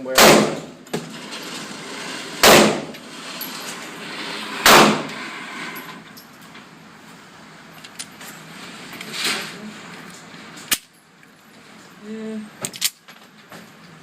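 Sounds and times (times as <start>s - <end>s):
pistol shots echoing: 0.1s - 0.8s, 2.4s - 2.9s.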